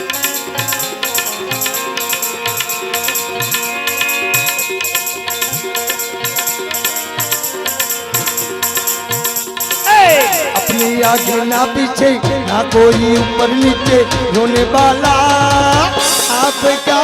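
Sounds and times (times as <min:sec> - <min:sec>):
hand drum strokes: 0:00.0 - 0:16.7
held melodic notes: 0:00.0 - 0:17.0
shaken rattle: 0:00.2 - 0:11.5.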